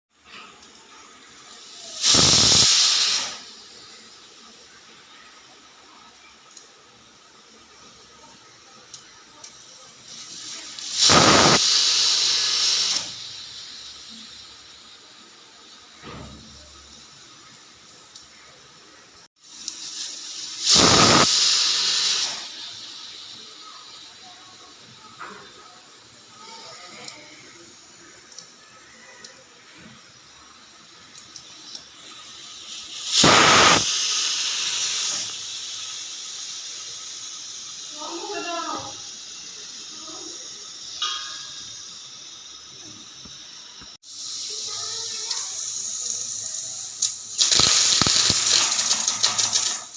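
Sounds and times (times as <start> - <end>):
puff of steam: 0.2 - 17.6, 19.4 - 49.9
pressure cooker whistle: 10.9 - 13.1, 20.7 - 22.5, 33.1 - 35.4.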